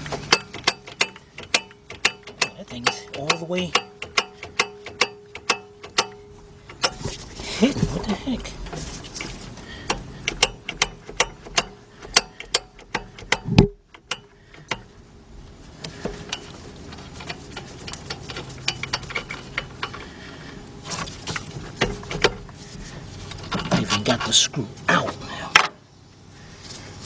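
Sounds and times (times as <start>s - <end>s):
ratchet clicking: 0.0s - 7.0s, 9.8s - 14.9s.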